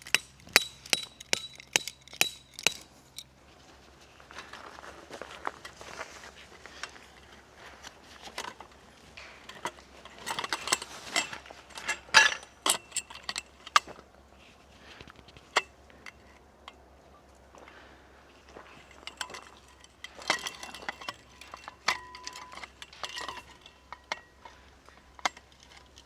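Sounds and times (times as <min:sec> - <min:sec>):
small hard objects clicking: 0:00.0 - 0:03.3.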